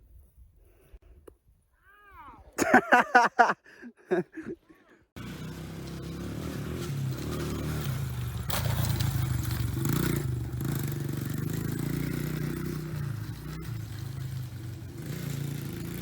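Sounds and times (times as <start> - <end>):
dirt bike engine running: 5.2 - 16.0.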